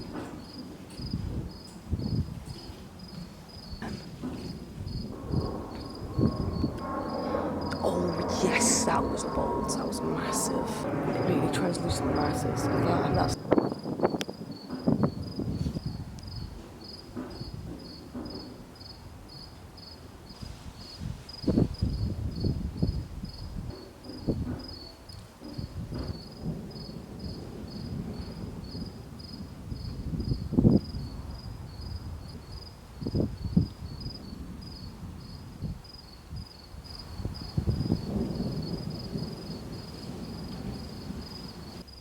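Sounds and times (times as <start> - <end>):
insect chirping: 0.0 - 23.5, 26.2 - 42.0
low thumps and rumbles: 3.8 - 13.8.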